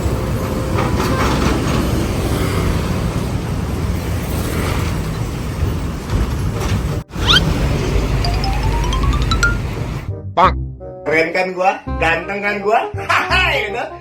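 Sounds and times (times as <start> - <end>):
short rising whistle tone: 7.2 - 7.5.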